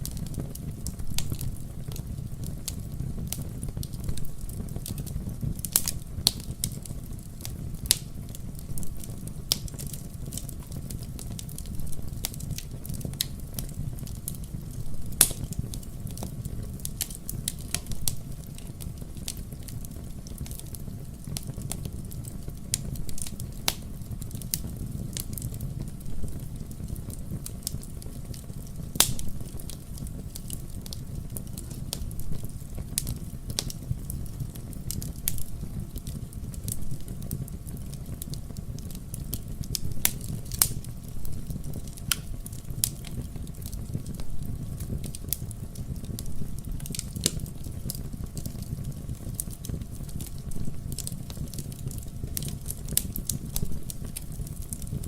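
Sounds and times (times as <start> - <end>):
fire flames rumbling: 0.0 - 55.0
logs crackling and popping: 0.0 - 55.0.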